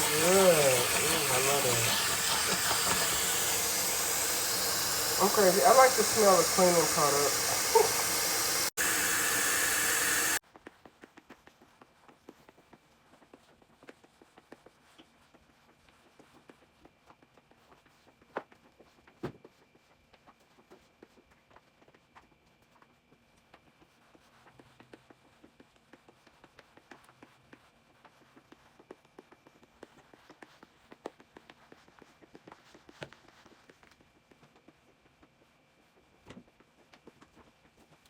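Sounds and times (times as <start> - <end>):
wet mop scrubbing floor: 0.0 - 10.4.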